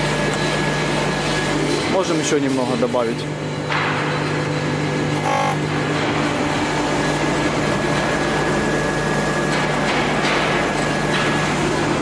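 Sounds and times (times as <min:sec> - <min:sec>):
lathe motor whirring: 0:04.4 - 0:12.0.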